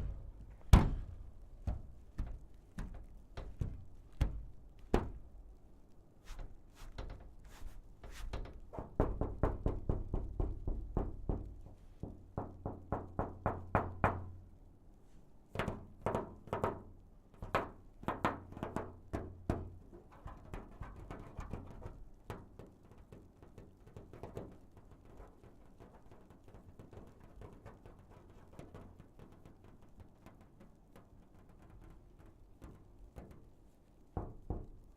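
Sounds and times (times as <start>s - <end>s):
knocks on metal booth: 0.0s - 5.2s.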